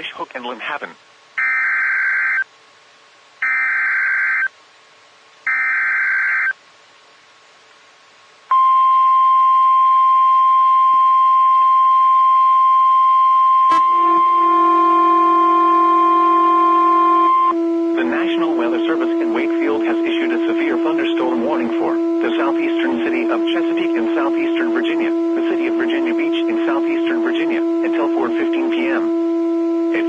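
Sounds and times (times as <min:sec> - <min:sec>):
lower steady tones: 0:08.5 - 0:30.0
steady attention tone: 0:08.5 - 0:30.0
warbling data tone bursts: 0:13.7 - 0:29.2.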